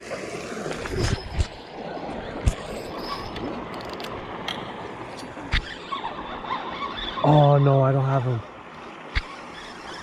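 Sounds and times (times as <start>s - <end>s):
fishing reel whirring: 9.1s - 10.0s.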